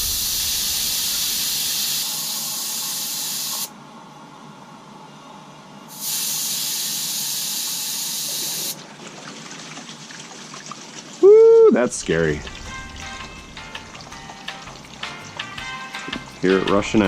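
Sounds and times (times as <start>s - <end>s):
air hissing out of valve: 0.0s - 3.7s, 5.9s - 8.8s.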